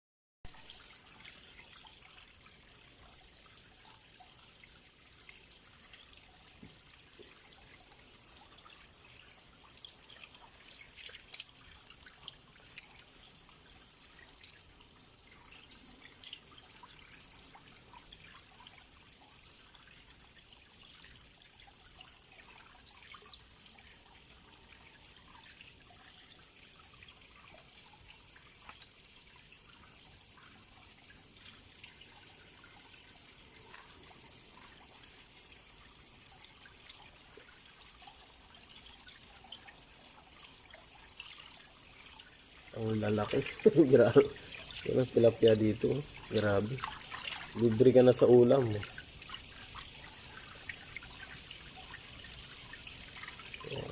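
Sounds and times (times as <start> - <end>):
faint trickling water: 0.5 - 53.9
small splashes or ticks: 0.5 - 53.9
high-pitched hiss: 42.6 - 53.9.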